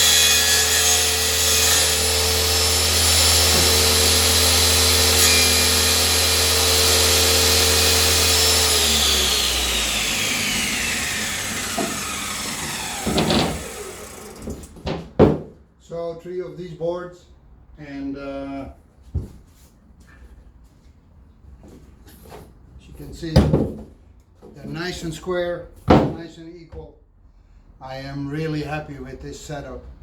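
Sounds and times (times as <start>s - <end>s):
power saw running: 0.0s - 14.8s
knocks: 13.0s - 13.8s, 14.4s - 15.6s.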